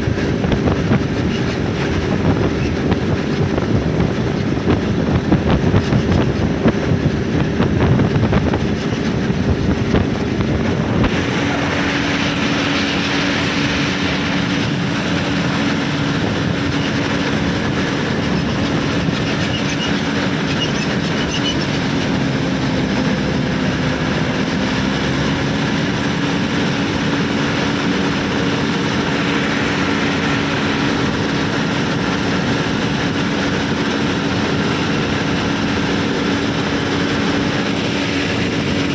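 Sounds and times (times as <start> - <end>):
heavy vehicle engine running: 0.0 - 38.9.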